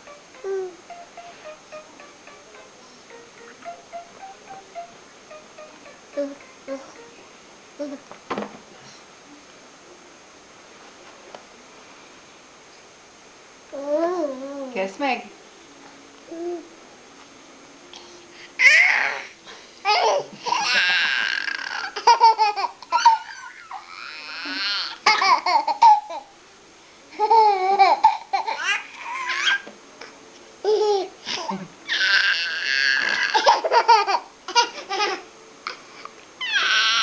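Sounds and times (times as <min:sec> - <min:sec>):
child babbling and gliding vocal noises: 0:00.4 - 0:00.8, 0:06.1 - 0:07.0, 0:07.8 - 0:08.0, 0:13.7 - 0:14.8, 0:16.3 - 0:16.8
child laughing: 0:19.9 - 0:23.8, 0:33.0 - 0:35.2.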